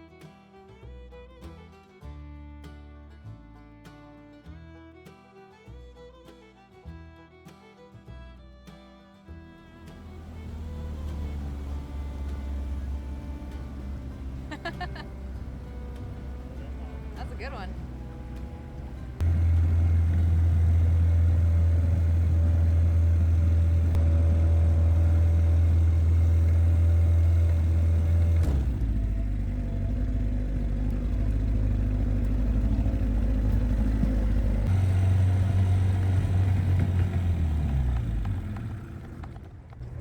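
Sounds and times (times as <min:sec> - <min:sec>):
boat motor running: 0:09.7 - 0:40.0.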